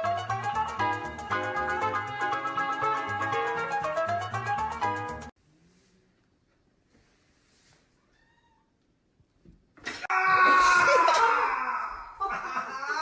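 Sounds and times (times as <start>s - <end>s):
cat yowling: 8.1s - 8.7s.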